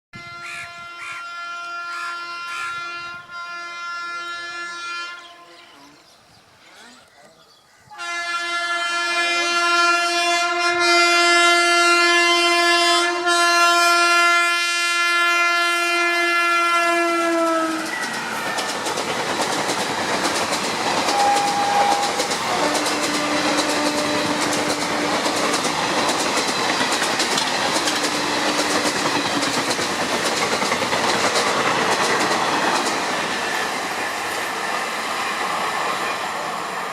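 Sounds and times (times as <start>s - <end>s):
locomotive horn blast: 0.2s - 5.9s, 7.9s - 18.8s, 21.0s - 25.6s
train wheels clattering over rail joints: 17.8s - 34.5s.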